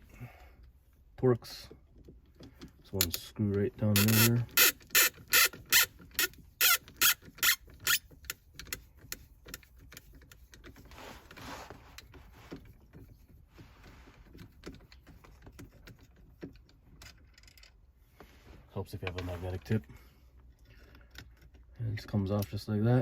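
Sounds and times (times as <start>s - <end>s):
screw ticking and scraping: 2.3s - 11.4s
screwdriver clicking: 4.0s - 8.0s.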